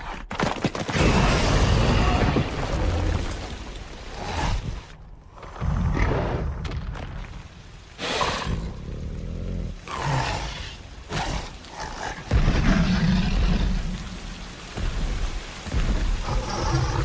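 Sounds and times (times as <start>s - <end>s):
dinosaur growls and roars: 8.0s - 14.2s.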